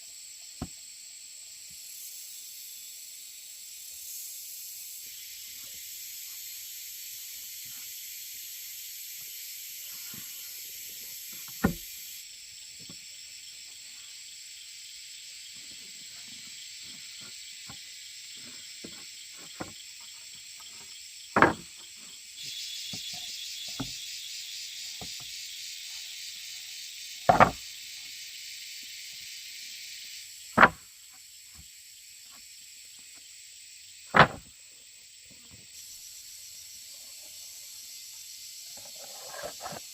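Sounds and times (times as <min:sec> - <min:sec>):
high-pitched hiss: 0:00.0 - 0:39.9
loud sharp knocks: 0:21.4 - 0:21.6, 0:27.3 - 0:27.6.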